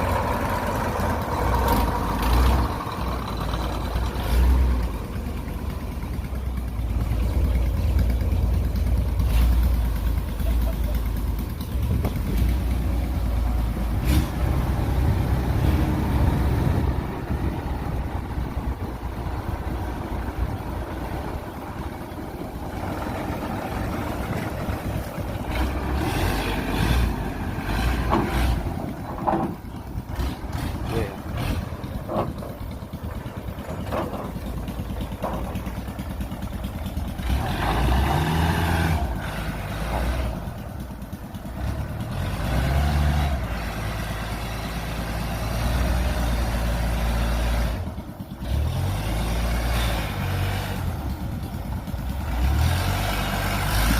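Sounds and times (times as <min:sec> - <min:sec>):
diesel engine running: 0:00.0 - 0:53.9
knocks and clanks: 0:27.8 - 0:36.8.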